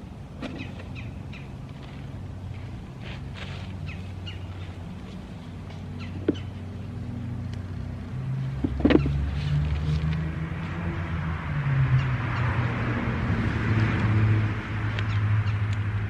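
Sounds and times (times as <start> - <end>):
birds chirping: 0.0 - 3.0, 3.7 - 7.8, 8.7 - 9.2
low mechanical hum: 0.0 - 11.0.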